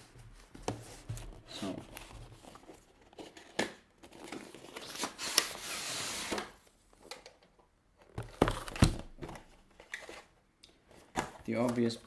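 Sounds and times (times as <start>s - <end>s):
packaging crinkling and rustling: 1.5s - 7.2s.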